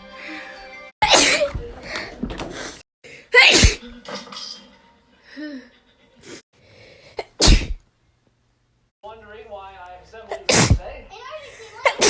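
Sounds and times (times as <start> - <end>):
person sneezing: 1.0 - 1.6, 2.6 - 3.9, 7.2 - 7.8, 10.5 - 10.9, 11.8 - 12.0.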